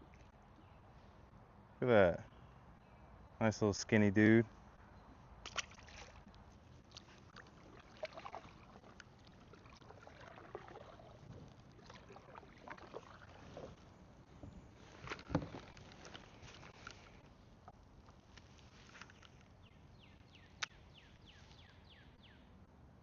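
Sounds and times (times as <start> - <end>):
faint water sounds: 0.0 - 1.2, 4.0 - 19.9.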